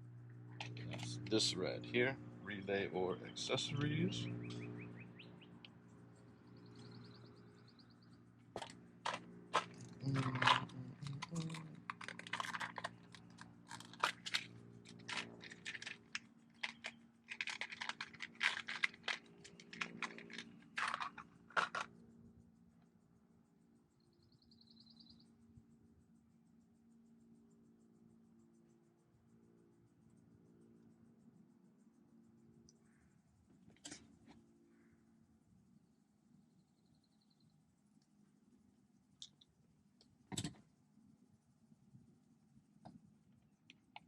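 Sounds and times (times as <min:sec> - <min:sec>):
bird chirping: 0:02.5 - 0:08.2, 0:24.0 - 0:25.3
plastic connectors clicking and rustling: 0:08.6 - 0:21.9.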